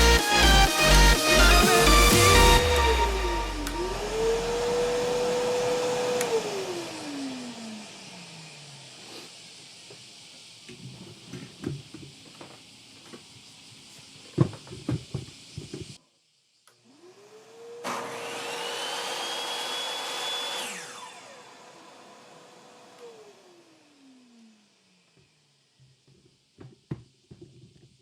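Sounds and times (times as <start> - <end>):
table saw motor whining: 0.0 - 12.6, 16.8 - 25.6.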